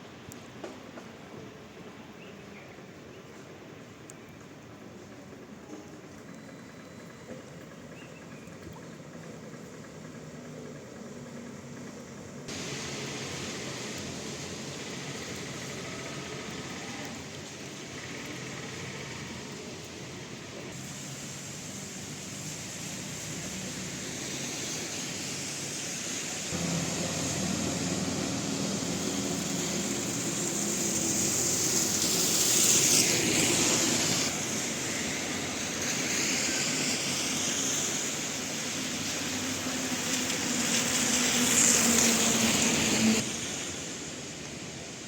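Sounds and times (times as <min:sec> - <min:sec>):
traffic hiss on wet street: 0:00.0 - 0:45.0
vehicles passing close: 0:09.1 - 0:44.9.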